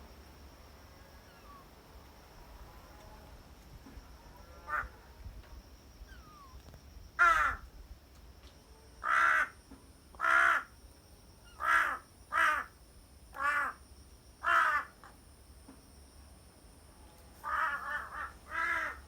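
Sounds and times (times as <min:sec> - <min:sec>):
crow calling: 0:04.7 - 0:04.9, 0:07.2 - 0:07.6, 0:09.0 - 0:09.6, 0:10.2 - 0:10.7, 0:11.5 - 0:12.7, 0:13.4 - 0:13.8, 0:14.4 - 0:14.9, 0:17.4 - 0:19.0.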